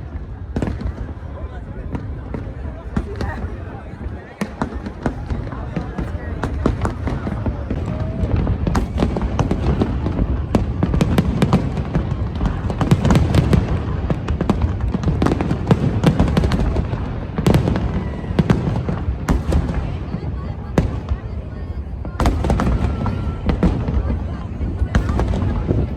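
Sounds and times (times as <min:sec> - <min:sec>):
fireworks bangs and crackles: 0:00.0 - 0:25.9.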